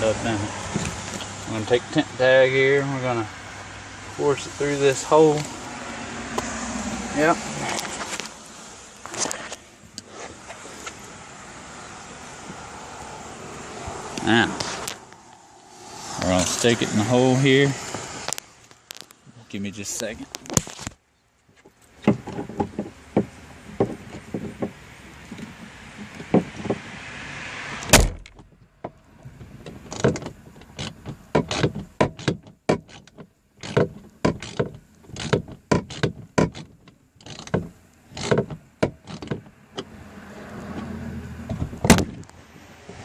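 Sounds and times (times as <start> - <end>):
metal clicks and knocks: 29.6 - 39.9.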